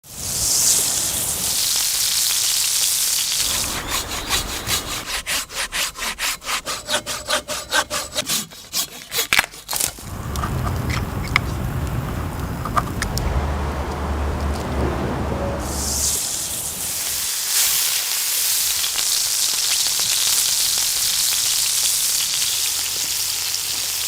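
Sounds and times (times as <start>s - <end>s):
steady hiss: 0.0s - 6.3s, 15.5s - 23.6s
low rumble: 3.3s - 6.8s, 10.0s - 17.0s
hand saw cutting wood: 3.4s - 11.0s.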